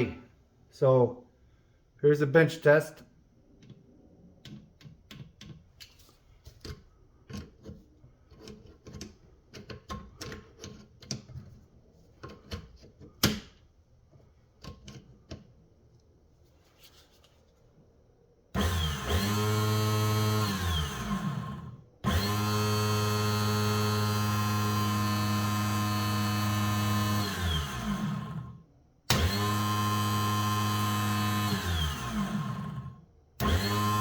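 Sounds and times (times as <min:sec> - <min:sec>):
electric starter motor whine: 0:18.6 - 0:34.0.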